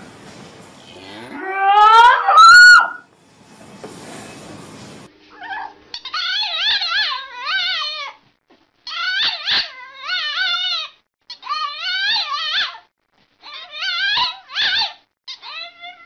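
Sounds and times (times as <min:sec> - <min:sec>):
dog howling: 0:01.2 - 0:03.0, 0:05.4 - 0:08.1.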